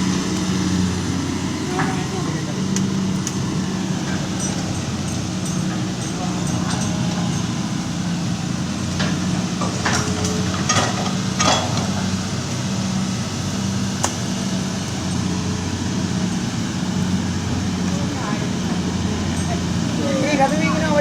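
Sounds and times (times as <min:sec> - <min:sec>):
metallic clatters: 0:00.0 - 0:12.1
diesel excavator engine running: 0:00.0 - 0:21.0.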